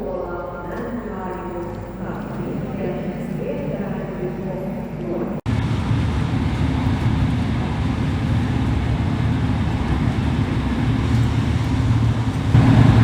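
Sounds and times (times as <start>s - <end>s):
train running rumble: 0.0s - 13.0s.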